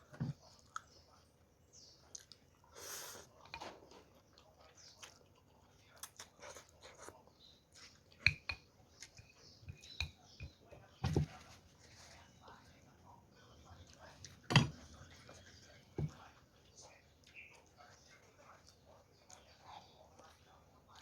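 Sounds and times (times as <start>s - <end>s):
person chewing with wet clicks: 0.4s - 1.0s, 2.0s - 10.2s, 16.2s - 21.0s.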